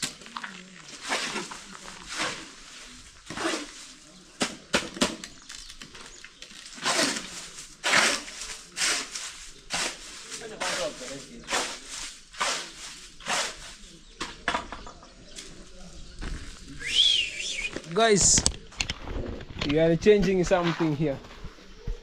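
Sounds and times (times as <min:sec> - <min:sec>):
shovel scraping wet concrete: 0:00.0 - 0:04.6, 0:06.6 - 0:14.0.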